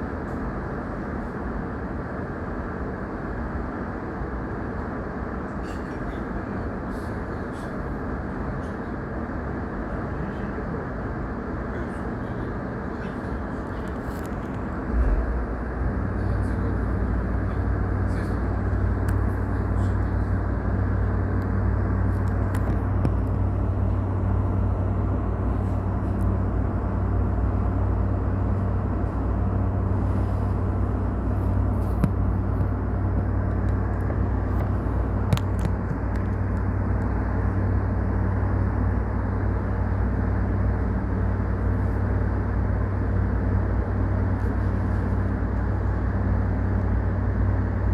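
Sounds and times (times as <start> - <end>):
train equipment hum: 0.0 - 47.9.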